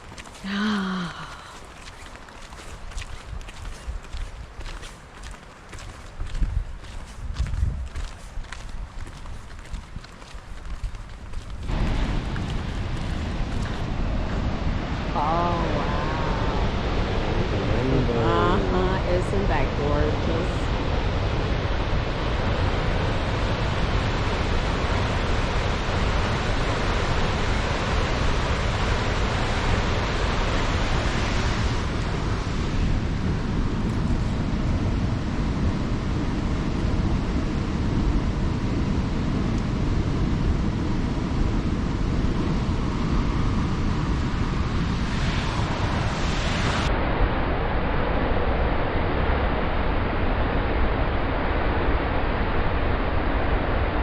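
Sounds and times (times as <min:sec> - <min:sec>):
wind buffeting microphone: 0:01.6 - 0:54.0
waterfall roaring: 0:08.6 - 0:39.4.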